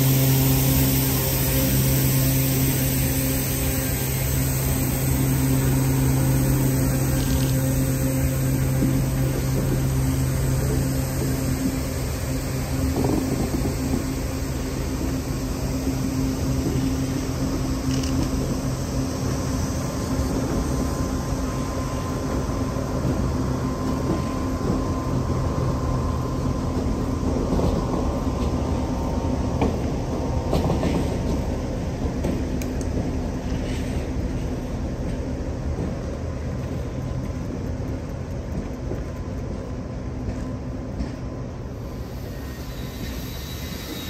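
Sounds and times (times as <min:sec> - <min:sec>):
diesel engine humming: 0:00.0 - 0:42.9
train wheels rumbling: 0:00.0 - 0:44.0
wheels clicking over rail joints: 0:21.6 - 0:44.0.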